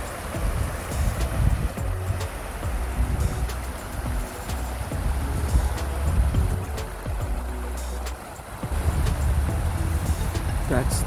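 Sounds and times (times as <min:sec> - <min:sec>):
faint background music: 0:00.0 - 0:11.0
wind gusting on microphone: 0:00.0 - 0:11.0.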